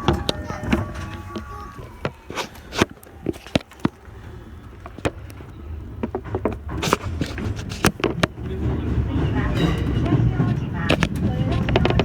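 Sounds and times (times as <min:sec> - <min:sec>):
sharp clicks and knocks: 0:00.0 - 0:09.0
subway train rumble: 0:00.0 - 0:12.0.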